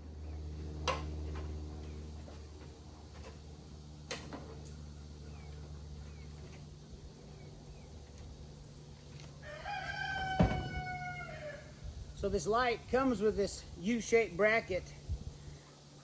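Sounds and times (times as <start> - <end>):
rooster crowing: 9.4 - 11.8.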